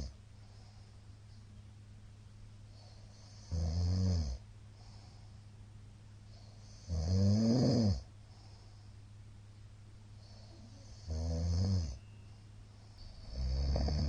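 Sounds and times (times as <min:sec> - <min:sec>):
steady low hum: 0:00.0 - 0:14.0
man snoring loudly: 0:03.3 - 0:04.4, 0:06.7 - 0:08.0, 0:10.9 - 0:12.0, 0:13.2 - 0:14.0.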